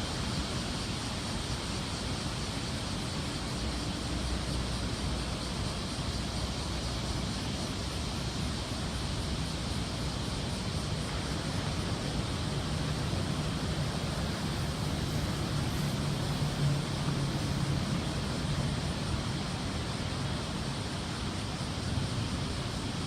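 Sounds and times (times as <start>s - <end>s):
wind rumbling on microphone: 0.0s - 23.0s
heavy ocean surf roaring: 10.4s - 23.0s.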